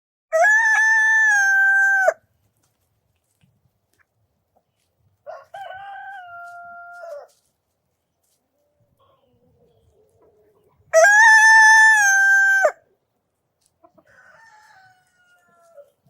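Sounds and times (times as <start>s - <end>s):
rooster crowing: 0.3s - 2.2s, 5.3s - 7.4s, 11.0s - 12.8s, 14.0s - 15.9s
distant rooster crowing: 5.3s - 7.4s, 11.0s - 12.8s, 14.0s - 16.0s.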